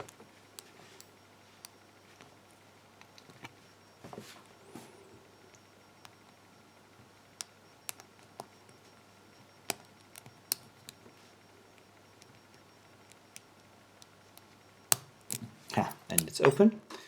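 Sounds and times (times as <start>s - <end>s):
lock pick clicking: 7.4s - 8.5s, 9.7s - 11.0s.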